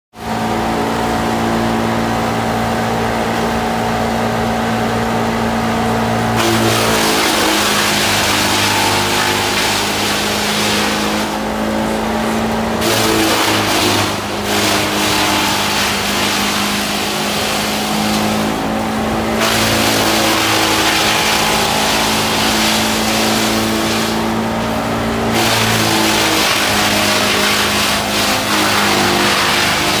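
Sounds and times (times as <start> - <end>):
diesel engine running: 0.2 - 30.0.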